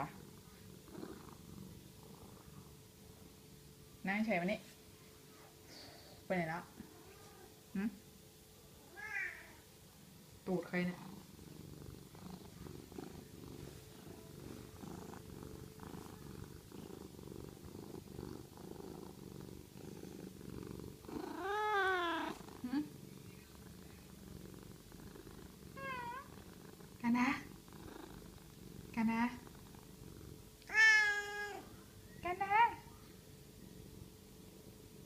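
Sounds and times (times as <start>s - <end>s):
cat purring: 0.0s - 8.0s, 9.9s - 35.0s
cat meowing: 8.9s - 9.6s, 21.3s - 22.4s, 25.8s - 26.3s, 30.7s - 31.7s.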